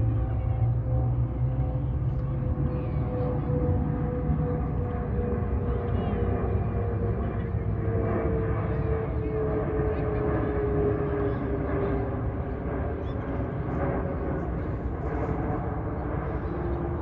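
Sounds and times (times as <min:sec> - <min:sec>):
jet aircraft engine passing: 0:00.0 - 0:17.0.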